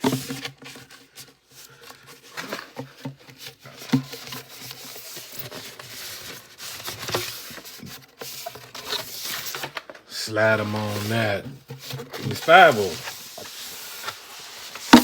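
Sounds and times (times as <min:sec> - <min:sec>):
paper posters rustling: 0:10.3 - 0:14.9.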